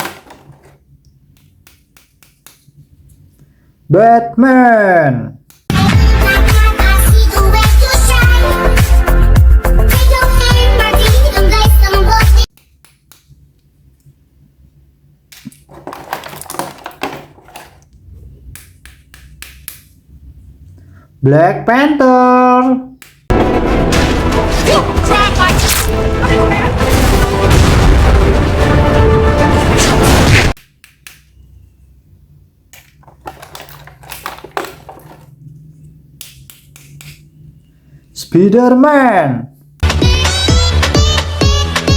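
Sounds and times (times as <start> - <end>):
plastic toy packaging handled: 15.5 - 17.9, 32.9 - 35.3
plastic packaging crinkling: 33.0 - 35.3.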